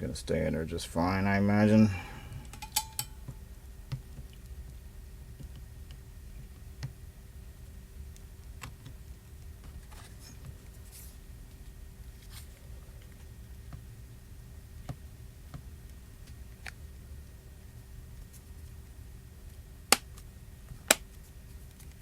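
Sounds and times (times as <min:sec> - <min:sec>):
low steady hum: 0:00.0 - 0:22.0
small tools tapping and clicking: 0:02.4 - 0:03.2.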